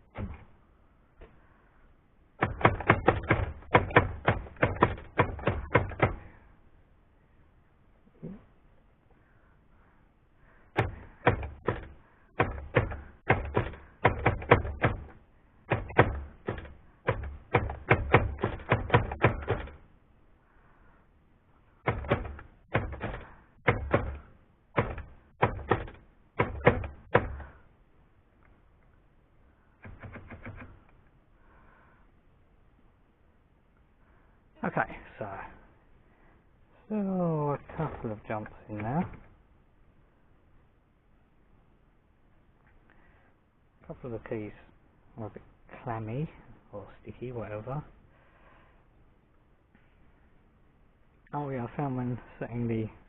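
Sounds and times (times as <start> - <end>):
typewriter carriage jumping: 15.7 - 19.8, 21.9 - 24.2
typewriter keystrokes: 15.7 - 19.8.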